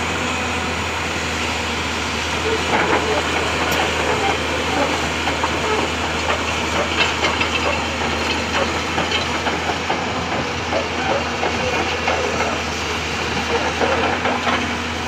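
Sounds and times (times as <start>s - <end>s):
excavator diesel engine running: 0.0s - 15.0s
knocks and clatter: 5.2s - 12.5s.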